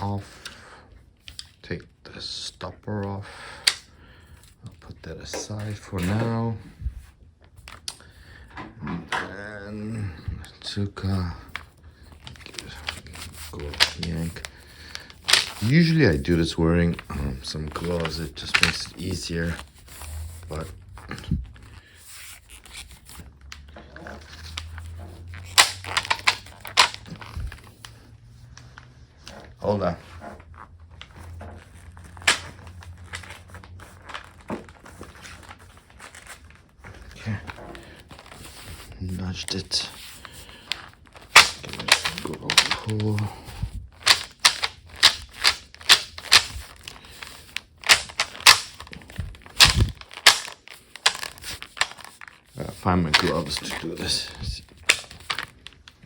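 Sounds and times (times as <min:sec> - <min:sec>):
strained vocal noises of effort: 0:08.6 - 0:11.4
bamboo slats clacking: 0:25.5 - 0:27.1, 0:41.3 - 0:43.2, 0:44.0 - 0:46.5, 0:47.8 - 0:48.8.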